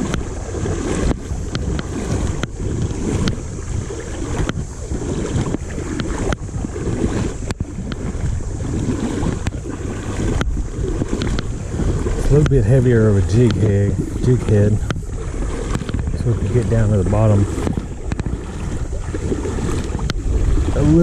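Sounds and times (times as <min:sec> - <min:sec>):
river water flowing: 0:00.0 - 0:21.0
wind buffeting microphone: 0:00.0 - 0:21.0
light clicks: 0:13.4 - 0:13.7.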